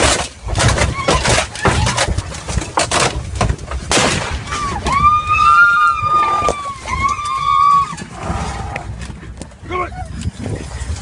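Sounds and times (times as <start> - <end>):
loud knocks and crashes: 0.0 - 5.1.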